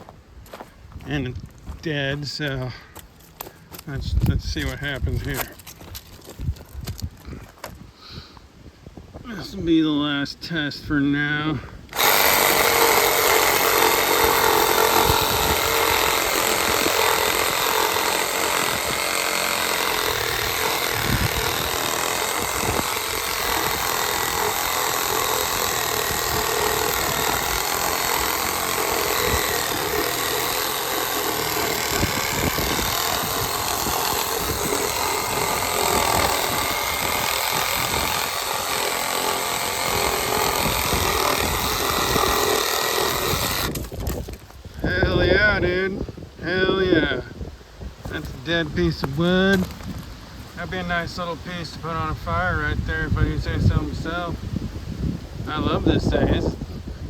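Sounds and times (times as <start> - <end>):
reciprocating saw cutting wood: 11.9 - 44.2.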